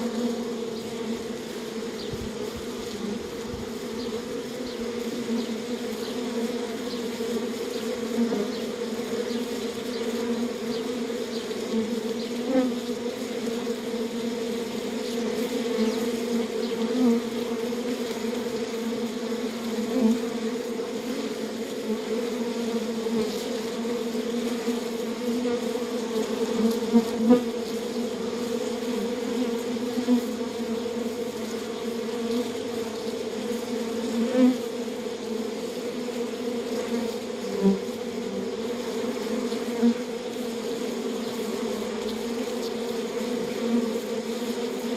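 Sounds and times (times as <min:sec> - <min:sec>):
bees buzzing: 0:00.0 - 0:44.9.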